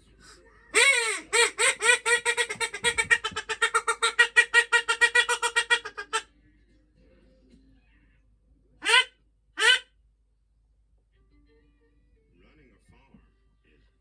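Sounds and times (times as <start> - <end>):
duck quacking: 0.8 - 6.2, 8.8 - 9.9.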